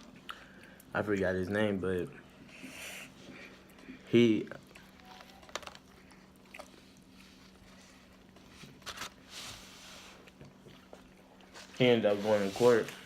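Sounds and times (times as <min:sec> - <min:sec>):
chewing food: 0:00.0 - 0:01.1, 0:01.8 - 0:08.8, 0:10.2 - 0:11.8
low steady hum: 0:00.0 - 0:13.0.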